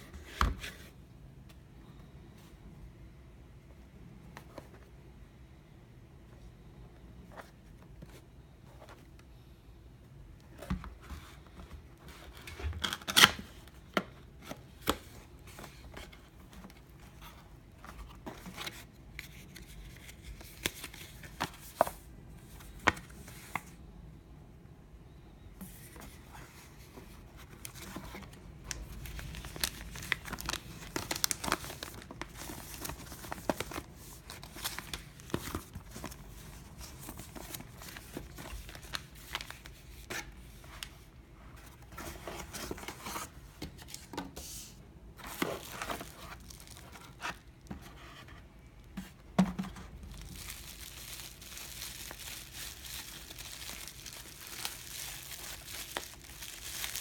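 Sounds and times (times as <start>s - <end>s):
packaging tearing and crinkling: 28.7s - 36.1s, 50.0s - 57.0s.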